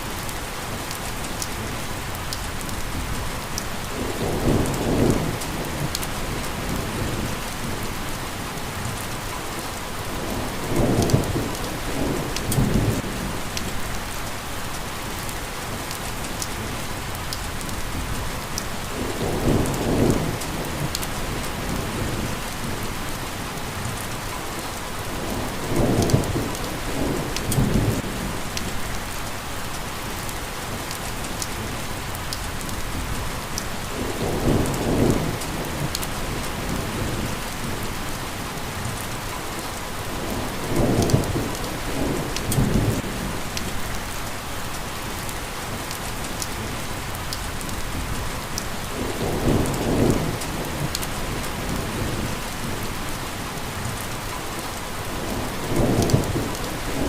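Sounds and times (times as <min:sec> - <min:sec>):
steady rain falling: 0:00.0 - 0:57.0
low rumble of thunder: 0:02.5 - 0:08.2, 0:10.1 - 0:14.2, 0:17.5 - 0:24.0, 0:25.1 - 0:29.2, 0:32.5 - 0:39.3, 0:40.0 - 0:44.2, 0:47.5 - 0:54.0, 0:55.0 - 0:57.0.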